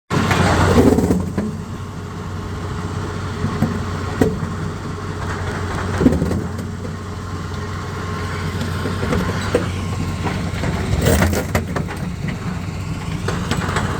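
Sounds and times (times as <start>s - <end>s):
rock crusher humming: 0.1s - 13.9s
rock knocking in crusher: 3.4s - 7.0s, 8.6s - 13.9s.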